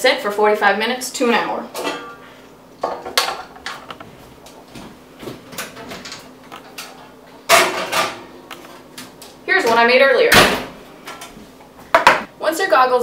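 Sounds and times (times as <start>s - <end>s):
kitchen items knocking and clicking: 2.8s - 4.1s, 5.2s - 9.8s, 11.9s - 12.3s.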